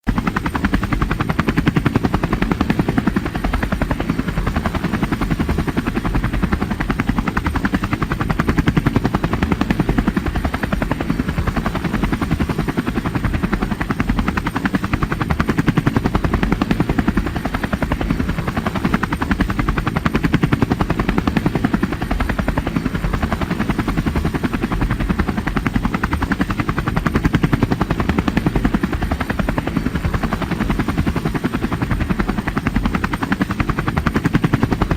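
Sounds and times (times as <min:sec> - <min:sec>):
helicopter rotor chopping: 0:00.1 - 0:34.9.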